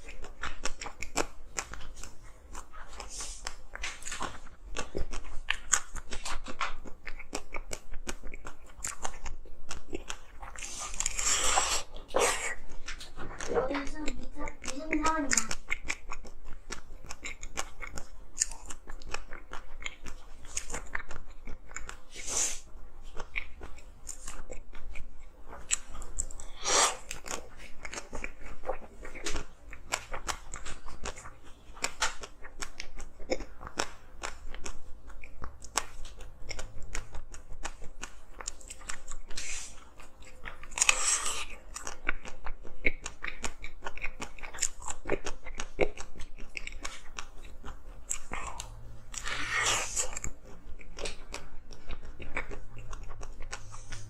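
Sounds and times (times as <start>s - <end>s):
ice being chewed: 0.0s - 54.0s.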